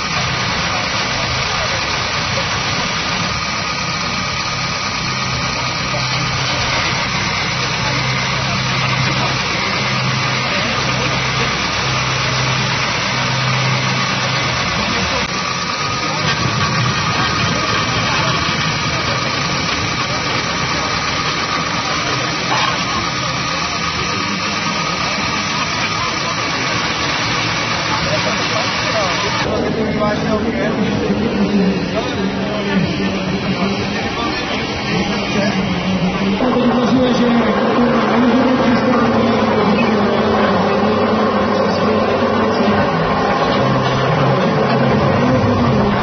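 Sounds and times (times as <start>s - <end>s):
engine idling: 0.0s - 46.0s
murmur of voices: 0.0s - 46.0s.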